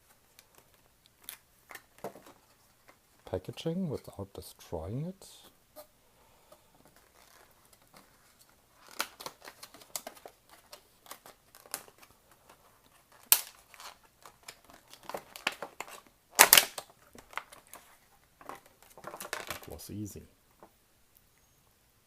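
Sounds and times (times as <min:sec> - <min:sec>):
packaging rustling and crinkling: 0:00.0 - 0:04.1, 0:06.7 - 0:20.0.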